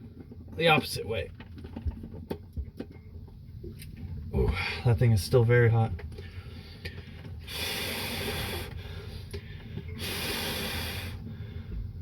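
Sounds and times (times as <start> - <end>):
rushes of air hissing: 10.0 - 11.7.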